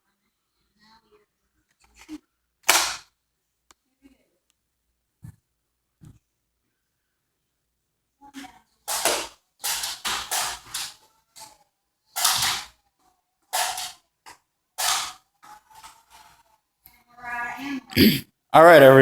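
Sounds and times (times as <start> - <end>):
toy blaster firing darts: 2.6 - 3.1, 8.9 - 11.0, 12.2 - 12.8, 13.6 - 14.0, 14.8 - 15.2.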